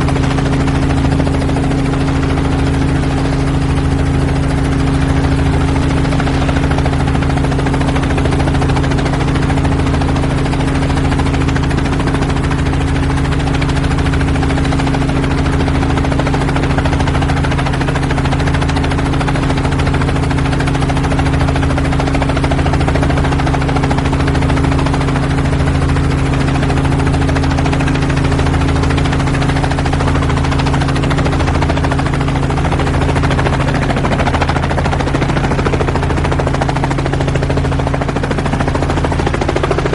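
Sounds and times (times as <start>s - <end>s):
helicopter turbine and rotor drone: 0.0s - 39.9s.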